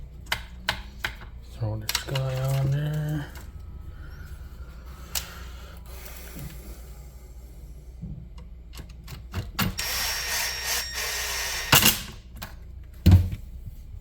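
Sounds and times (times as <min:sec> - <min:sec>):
handheld power tool running: 0:09.7 - 0:12.1.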